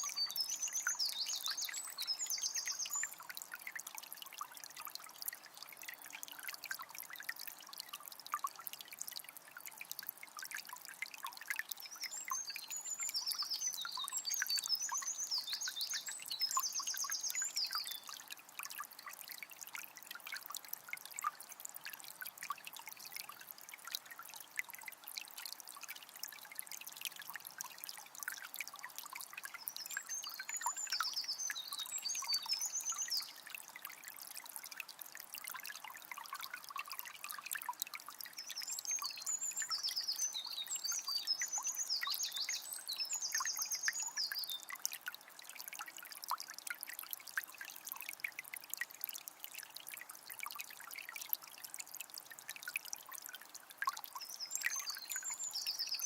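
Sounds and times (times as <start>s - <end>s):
songbird singing: 0.0s - 3.3s, 11.8s - 18.2s, 29.6s - 33.5s, 38.3s - 44.7s, 54.2s - 56.0s
spring water trickling: 0.0s - 56.0s.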